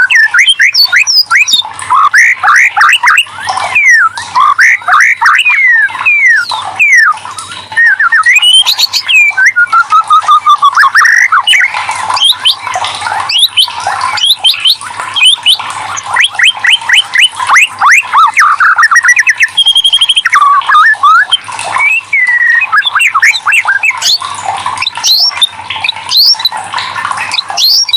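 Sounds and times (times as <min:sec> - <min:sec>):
songbird singing varied song: 0:03.8 - 0:07.2, 0:07.8 - 0:11.6.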